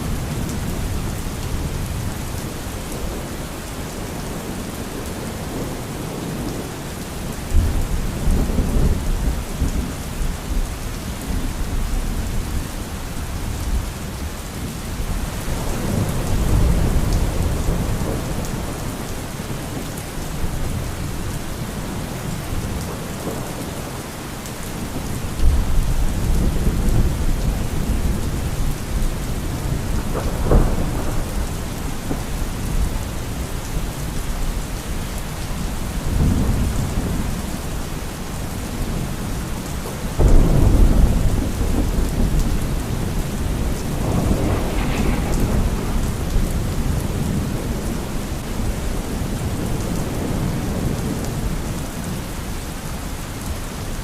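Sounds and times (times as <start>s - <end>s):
heavy rain: 0.0s - 54.0s
rolling thunder: 15.2s - 19.8s, 24.8s - 35.0s, 40.0s - 52.2s
sharp thunder crack: 40.2s - 48.0s.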